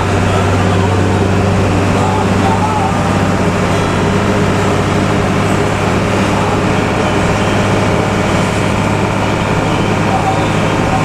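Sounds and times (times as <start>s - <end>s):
bus engine running: 0.0s - 11.0s.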